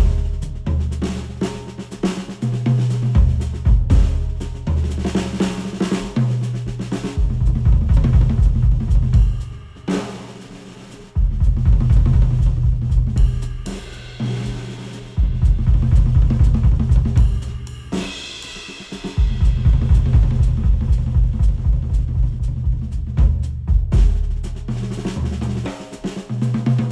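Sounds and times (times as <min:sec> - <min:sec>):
heavy pulsing bass: 0:00.0 - 0:00.9, 0:19.4 - 0:24.2
drum kit: 0:00.0 - 0:26.9.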